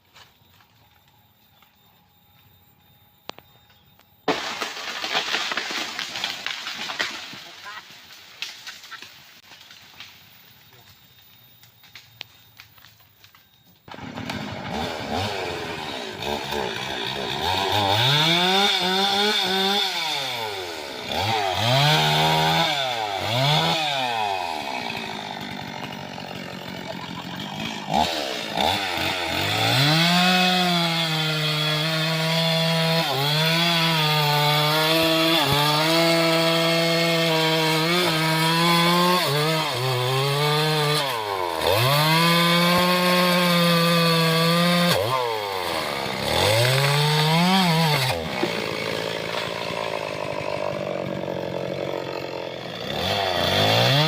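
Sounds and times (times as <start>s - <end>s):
chainsaw revving: 13.9s - 54.0s.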